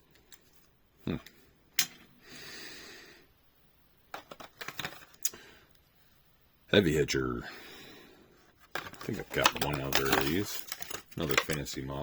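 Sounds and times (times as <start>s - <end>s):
packaging rustle: 8.7s - 11.7s
plastic and cardboard clicking: 8.7s - 11.7s.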